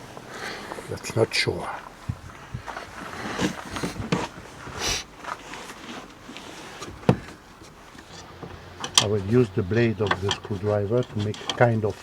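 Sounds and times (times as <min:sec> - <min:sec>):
tool scraping: 0:00.4 - 0:12.0
tool handling clicks and knocks: 0:05.6 - 0:12.0.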